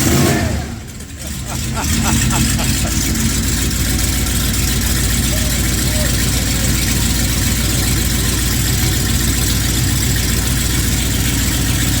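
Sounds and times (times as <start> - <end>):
truck engine idling: 0.0 - 12.0.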